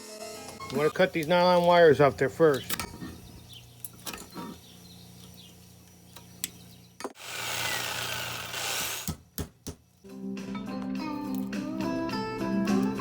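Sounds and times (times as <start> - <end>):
guitar music: 10.1 - 13.0.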